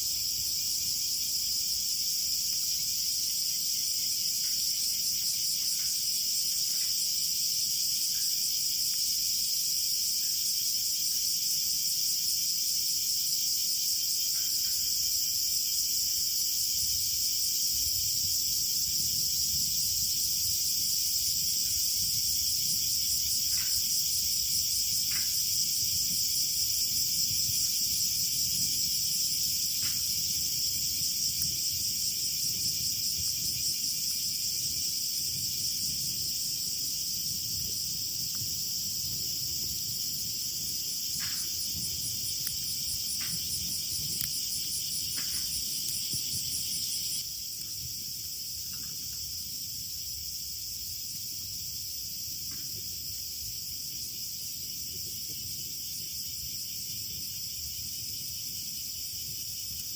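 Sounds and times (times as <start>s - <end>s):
insects chirring: 0.0s - 59.9s.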